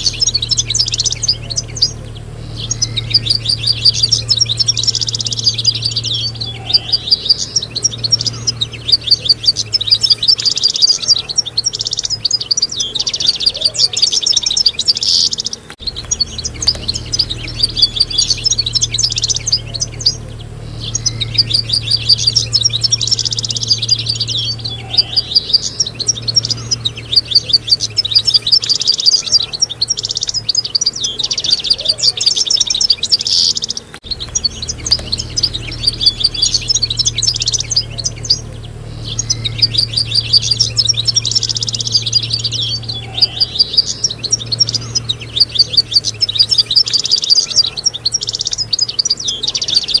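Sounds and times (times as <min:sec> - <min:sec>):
faint low hum: 0:00.0 - 0:50.0
finches twittering: 0:00.0 - 0:50.0.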